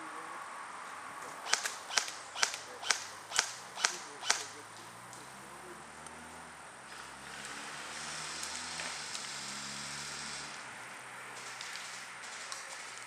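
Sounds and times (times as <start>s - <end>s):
airsoft gun shots: 1.4s - 4.9s.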